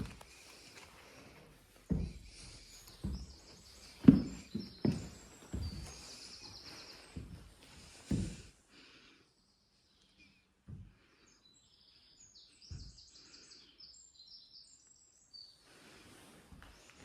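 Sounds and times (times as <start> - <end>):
faint footsteps: 0.0 - 8.6, 15.8 - 17.0
birds chirping: 1.9 - 16.0.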